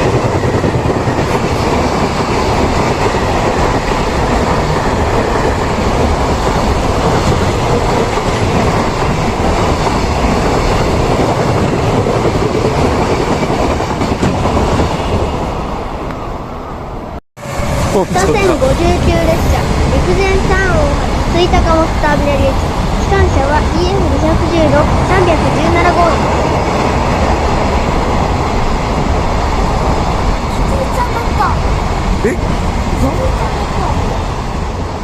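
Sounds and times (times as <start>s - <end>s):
freight train passing: 0.0s - 35.0s.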